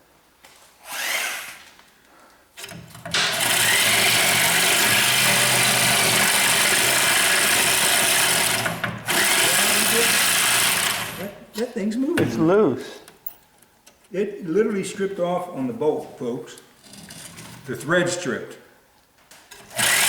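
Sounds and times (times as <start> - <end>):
reciprocating saw cutting metal: 0.8 - 1.6, 2.6 - 11.4, 19.6 - 20.0.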